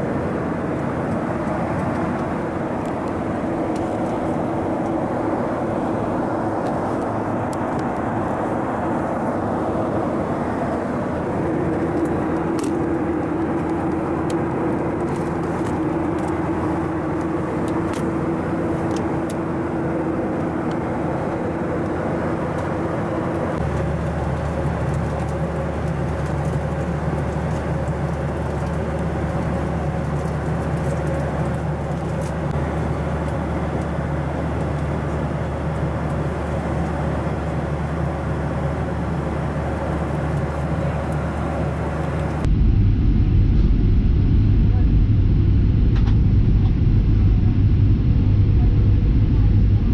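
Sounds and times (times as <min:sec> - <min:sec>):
airplane engine hum: 0:00.0 - 0:49.9
rushing air noise: 0:42.4 - 0:49.9.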